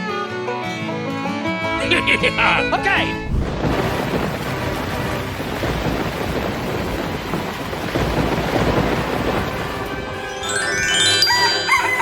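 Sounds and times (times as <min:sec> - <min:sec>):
heavy rain hissing: 0:01.7 - 0:10.6
thunder rumbling: 0:01.7 - 0:10.8.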